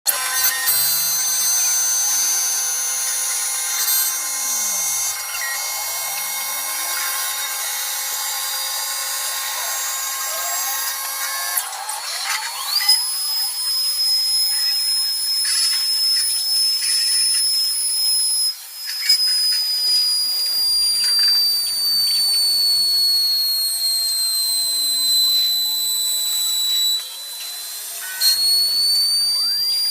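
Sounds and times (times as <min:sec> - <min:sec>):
wood-carving machine whining: 0:00.1 - 0:29.9.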